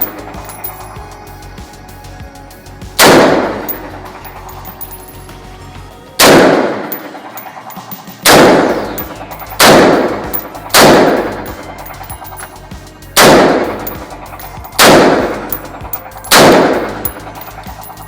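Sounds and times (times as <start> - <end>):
gunshots with echo: 0.0 - 0.6, 3.0 - 4.8, 6.2 - 12.4, 13.2 - 17.5.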